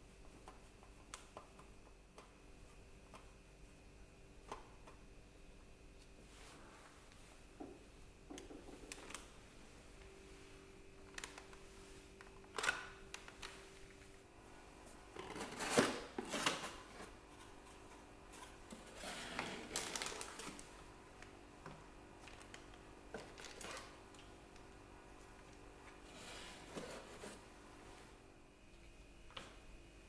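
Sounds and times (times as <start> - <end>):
plastic parts scraping: 15.2 - 20.6.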